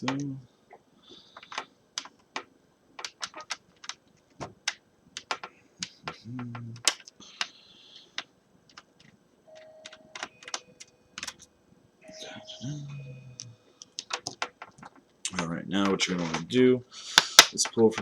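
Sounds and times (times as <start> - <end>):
screws tapping on plastic: 1.4 - 7.5, 13.8 - 16.5.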